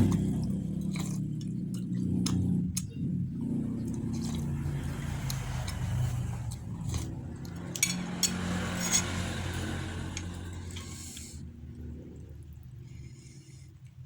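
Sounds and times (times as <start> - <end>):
steady low hum: 0.0 - 14.0
spoon clinking against a bowl: 7.7 - 9.2.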